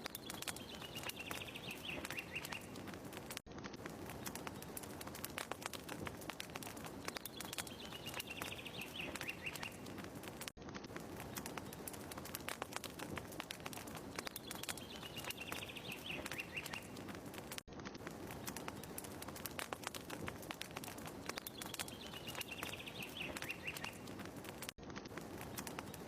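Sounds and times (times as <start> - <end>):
bird chirping: 0.0 - 2.9, 7.0 - 10.0, 14.1 - 17.1, 21.2 - 24.2
fire crackling in a fireplace: 0.0 - 26.0.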